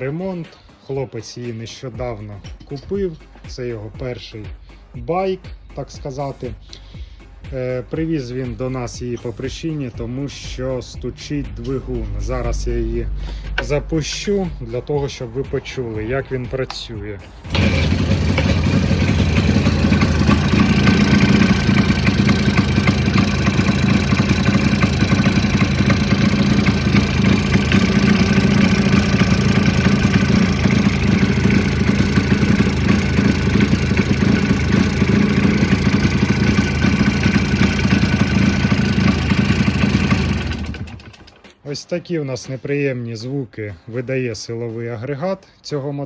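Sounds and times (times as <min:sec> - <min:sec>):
engine knocking: 0:17.5 - 0:41.3
two-stroke engine idling: 0:17.5 - 0:41.4.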